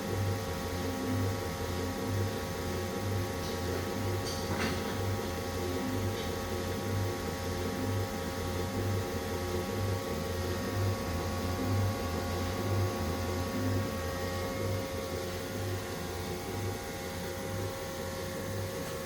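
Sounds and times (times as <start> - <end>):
lathe machine hum: 7.0 - 19.0.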